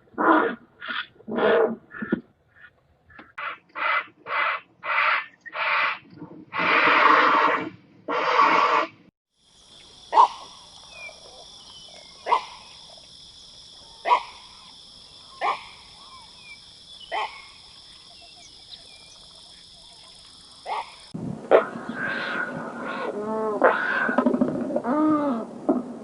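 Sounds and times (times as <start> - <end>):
high-pitched insect hum: 9.4 - 21.2.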